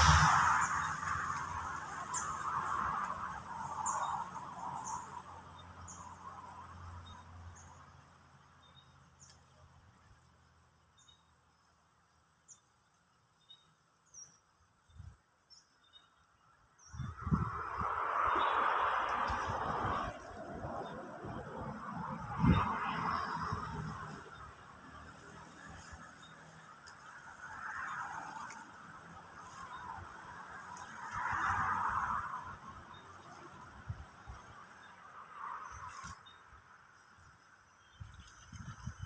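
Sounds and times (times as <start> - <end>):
passing vehicle: 0.0 - 10.1, 17.0 - 36.9.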